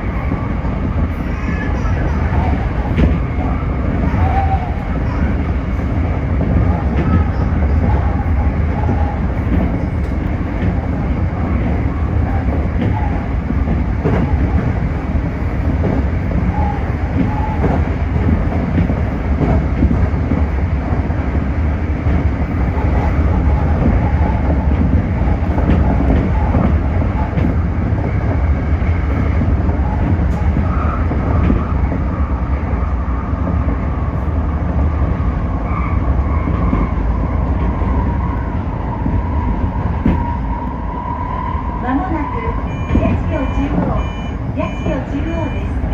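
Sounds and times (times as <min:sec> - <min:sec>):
train clickety-clack: 0:00.0 - 0:45.9
train wheels rumbling on rail: 0:00.0 - 0:45.9
faint train whine: 0:20.4 - 0:45.9.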